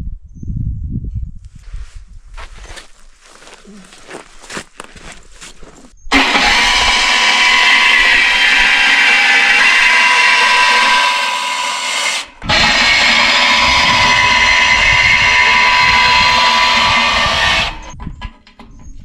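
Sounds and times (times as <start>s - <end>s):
power tool whining on steel: 6.1s - 18.0s.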